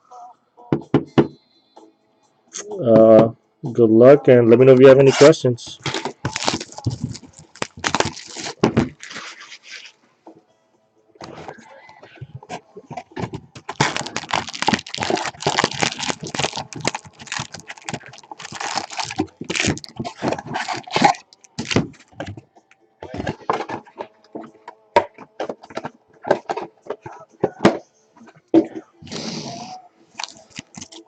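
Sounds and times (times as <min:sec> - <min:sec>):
plastic wrapper crinkling and tearing: 0:05.8 - 0:10.0, 0:13.7 - 0:22.0, 0:30.2 - 0:31.0.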